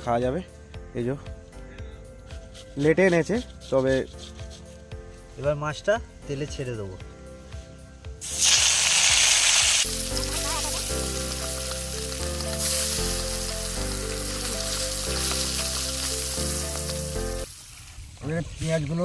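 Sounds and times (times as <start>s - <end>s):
background music: 0.0s - 17.5s
fish sizzling in hot oil: 8.2s - 18.2s.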